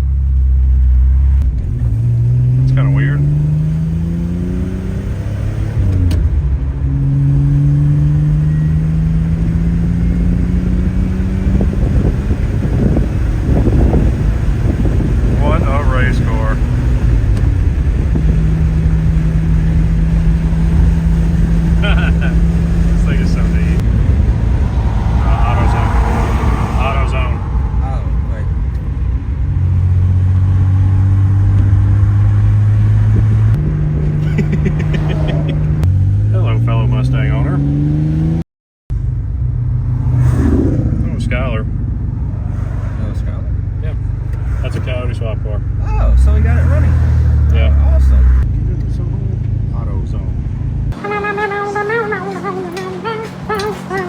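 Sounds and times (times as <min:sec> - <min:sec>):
car engine accelerating: 0:00.0 - 0:54.0
road noise: 0:00.0 - 0:54.0.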